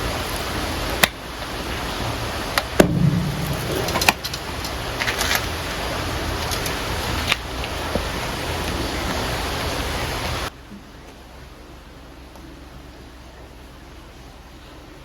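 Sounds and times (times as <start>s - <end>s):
thump: 2.8s - 4.6s
surf: 2.8s - 5.2s.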